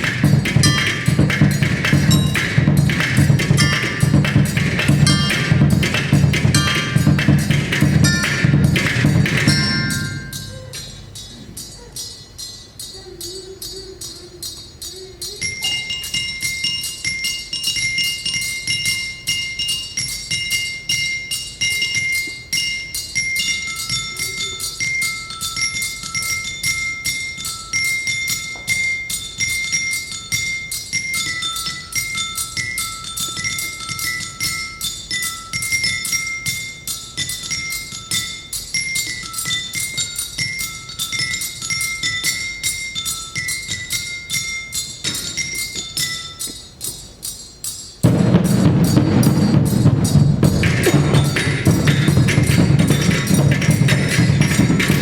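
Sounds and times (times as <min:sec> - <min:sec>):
mallet percussion repeated notes: 0:00.0 - 0:55.0
percussion ensemble music: 0:00.0 - 0:55.0.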